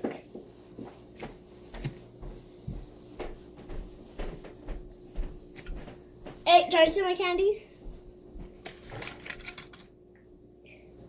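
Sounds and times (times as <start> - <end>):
faint steady hum: 0.0 - 11.0
small objects knocking and clicking: 8.6 - 9.9.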